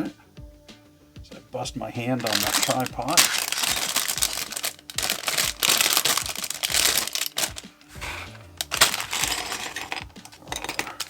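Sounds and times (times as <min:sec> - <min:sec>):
plastic bag crinkling and tearing: 0:02.2 - 0:11.0
plastic pieces clattering: 0:02.2 - 0:11.0.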